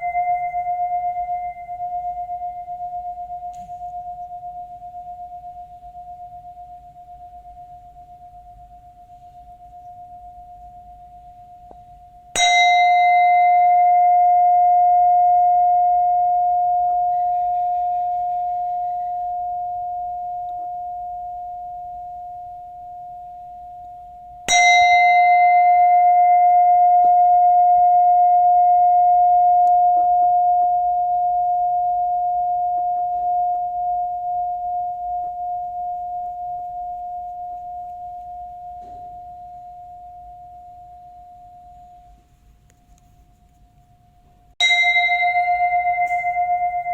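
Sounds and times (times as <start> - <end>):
bell ringing: 44.6 - 46.9.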